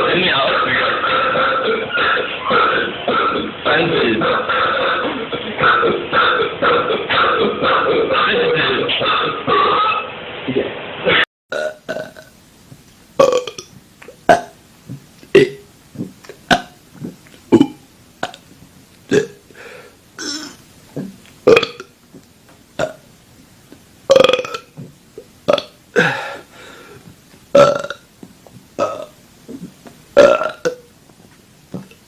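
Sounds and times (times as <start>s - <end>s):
man burping: 11.5s - 12.3s, 13.2s - 13.7s, 14.3s - 14.6s, 15.3s - 18.4s, 19.1s - 19.6s, 20.2s - 21.9s, 22.8s - 23.0s, 24.1s - 24.9s, 25.5s - 26.5s, 27.5s - 28.0s, 28.8s - 30.9s.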